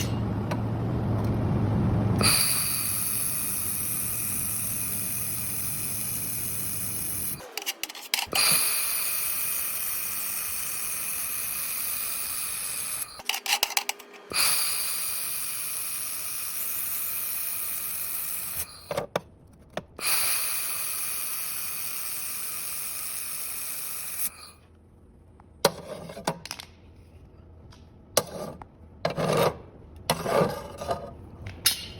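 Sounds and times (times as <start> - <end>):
low hum: 0.0 - 7.4
laser welder hissing with whine: 2.2 - 7.4, 8.3 - 13.2, 14.3 - 18.9, 20.0 - 24.6.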